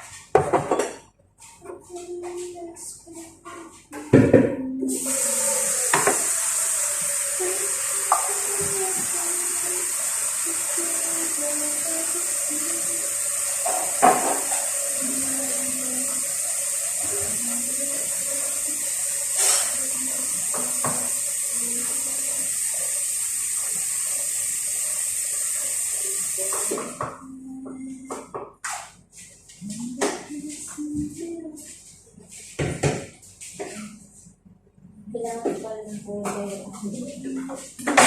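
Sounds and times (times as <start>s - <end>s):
water running from tap into sink: 4.8s - 28.1s.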